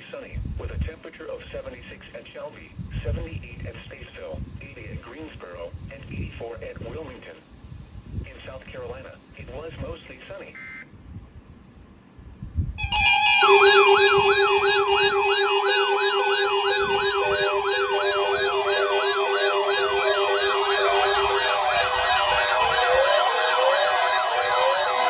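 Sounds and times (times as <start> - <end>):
electronic siren wails: 12.8 - 25.0
higher steady tones: 12.8 - 25.0
steady low tone: 12.8 - 25.0.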